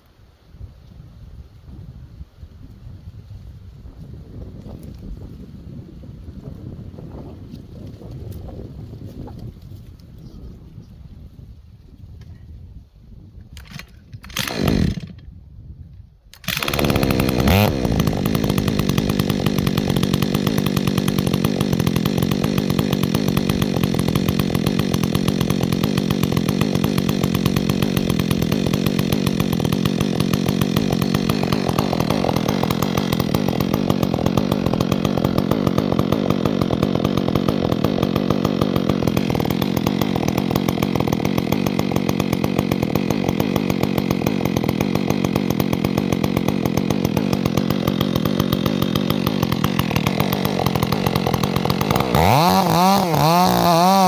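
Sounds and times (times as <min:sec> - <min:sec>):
chainsaw starting and running: 0:13.6 - 0:15.4, 0:16.3 - 0:54.0.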